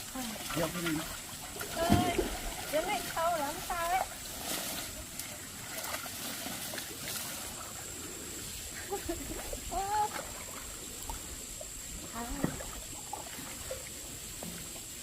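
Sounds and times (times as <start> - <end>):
short sharp water splashes: 0.0 - 7.7
pond water trickling: 0.0 - 15.0.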